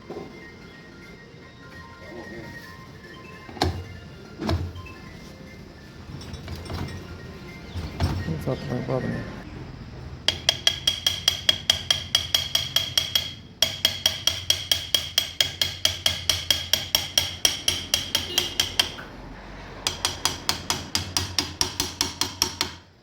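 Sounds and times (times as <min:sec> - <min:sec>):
hammer tapping metal: 0:10.3 - 0:19.1, 0:19.8 - 0:23.0.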